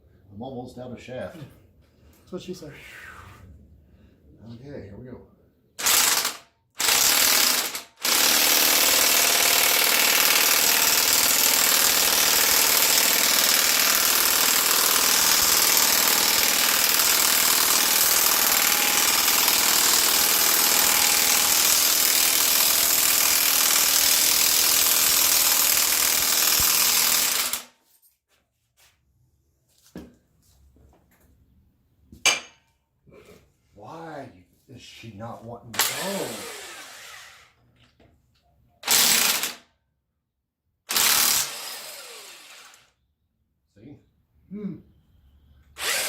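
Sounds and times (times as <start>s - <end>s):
impact wrench hammering: 32.3s - 32.6s.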